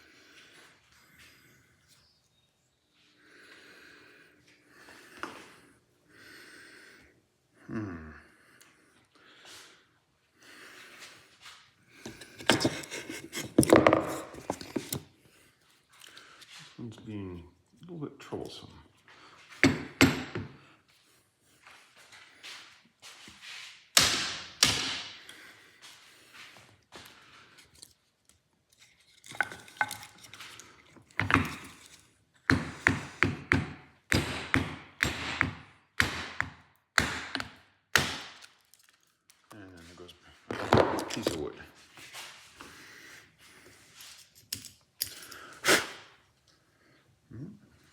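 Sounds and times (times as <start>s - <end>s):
person breathing hard: 3.2s - 13.0s, 25.1s - 27.7s, 42.6s - 44.0s
hammer striking wooden block: 19.6s - 20.5s, 32.5s - 38.4s.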